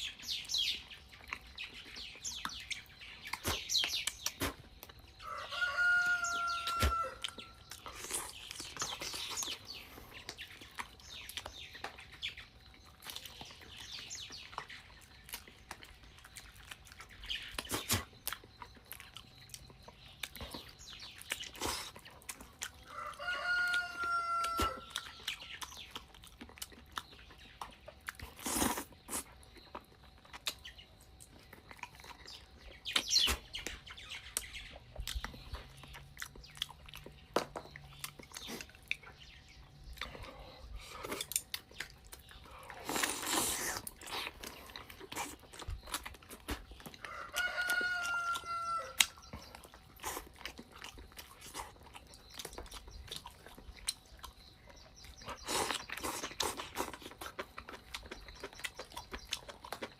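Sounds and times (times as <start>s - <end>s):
rooster crowing: 5.2s - 7.6s, 22.8s - 25.2s, 47.0s - 49.2s.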